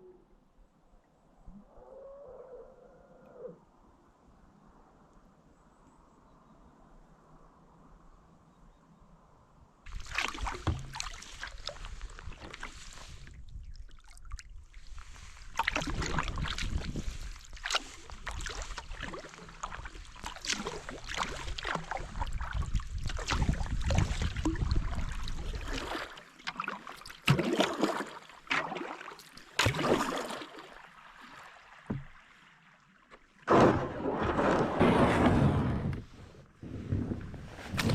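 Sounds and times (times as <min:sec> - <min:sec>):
paddle splashing in water: 0:09.9 - 0:36.0, 0:36.8 - 0:37.9.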